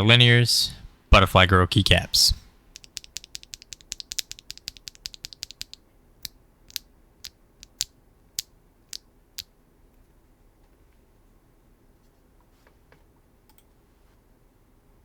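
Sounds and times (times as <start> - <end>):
mechanical keyboard typing: 2.8 - 5.8.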